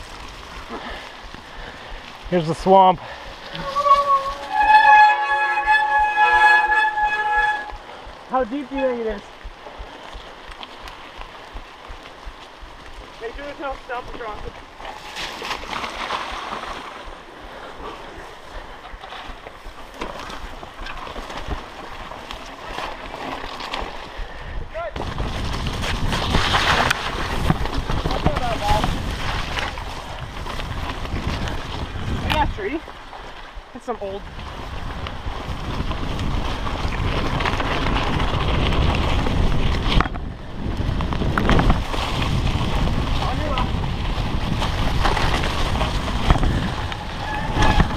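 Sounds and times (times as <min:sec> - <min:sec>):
bike tyres splashing through water: 0:00.0 - 0:47.9
bike rattling clicks: 0:09.4 - 0:13.2
wind noise on microphone: 0:22.8 - 0:47.9.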